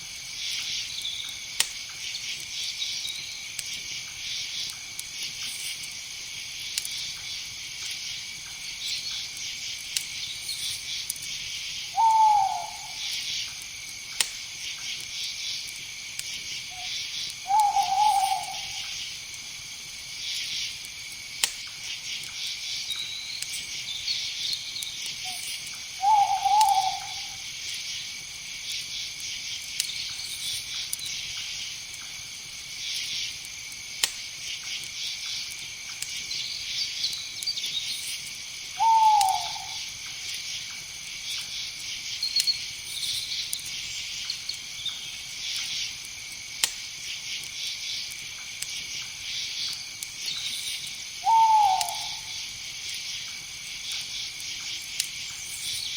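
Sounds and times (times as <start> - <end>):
insects chorus: 0.0 - 55.9
owl hooting: 12.0 - 13.1, 17.5 - 18.9, 26.0 - 27.4, 38.8 - 39.9, 51.2 - 52.4.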